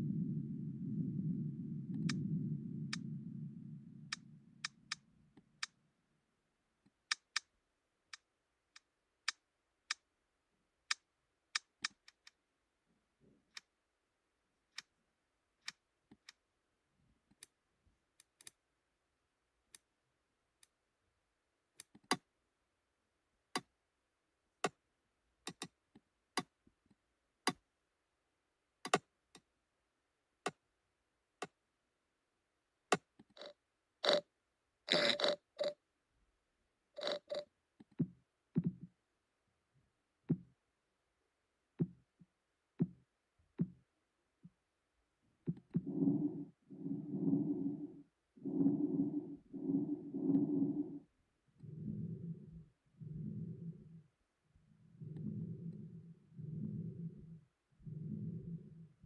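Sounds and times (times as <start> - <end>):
low simulated rumble: 0.0 - 6.0, 45.5 - 59.0.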